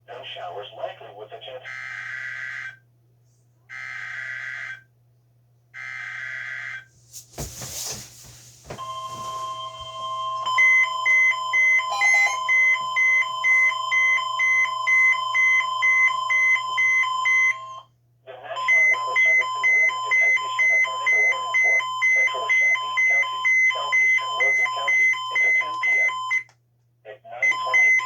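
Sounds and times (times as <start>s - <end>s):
steady warning alarm tone: 8.8s - 17.9s, 18.6s - 26.5s, 27.4s - 28.0s
rapid beeping: 11.6s - 12.8s
shrill data tone bursts: 11.9s - 12.7s.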